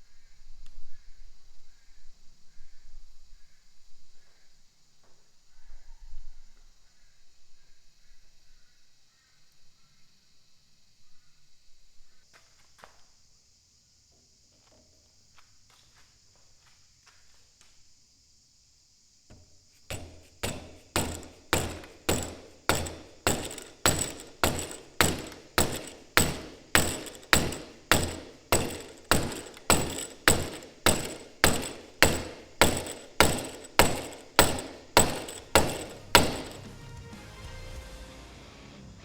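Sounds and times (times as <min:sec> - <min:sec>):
mallet striking chisel: 0:19.9 - 0:36.8.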